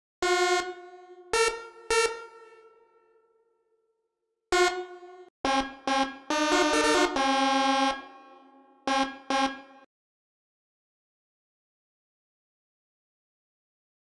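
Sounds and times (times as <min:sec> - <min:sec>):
air horn playing a tune: 0:04.6 - 0:09.8.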